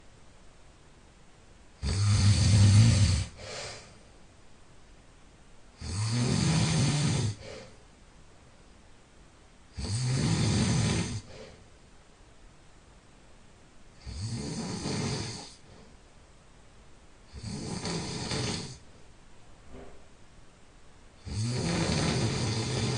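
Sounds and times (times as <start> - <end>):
person snoring loudly: 1.8 - 3.9, 5.8 - 7.7, 9.7 - 11.6, 14.0 - 15.6, 17.3 - 18.8, 21.2 - 22.9.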